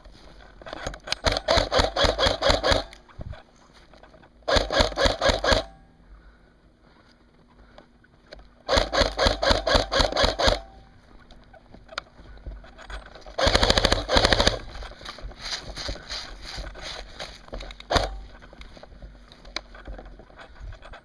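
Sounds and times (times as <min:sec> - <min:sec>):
airsoft rifle full-auto bursts: 0:01.2 - 0:03.0, 0:04.4 - 0:05.8, 0:08.6 - 0:10.8, 0:13.3 - 0:14.9, 0:16.5 - 0:18.4.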